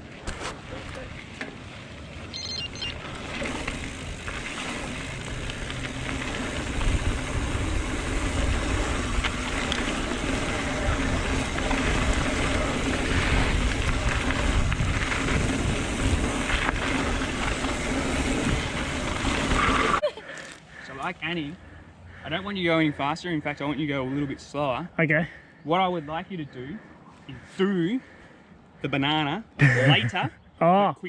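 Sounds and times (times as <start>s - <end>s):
tyres rolling over dirt: 0.0s - 20.6s
wind buffeting microphone: 2.9s - 20.0s.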